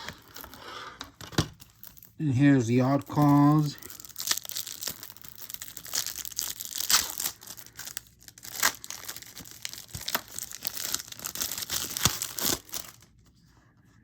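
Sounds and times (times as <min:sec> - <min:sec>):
packaging crinkling: 0:00.0 - 0:13.3.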